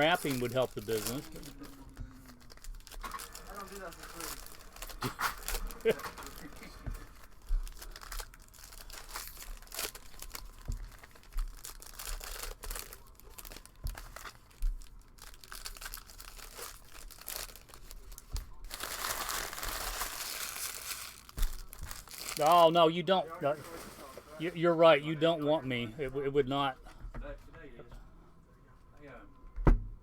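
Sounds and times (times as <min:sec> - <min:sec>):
cards being handled: 0:00.0 - 0:13.1
card wrappers crinkling and tearing: 0:00.0 - 0:22.8.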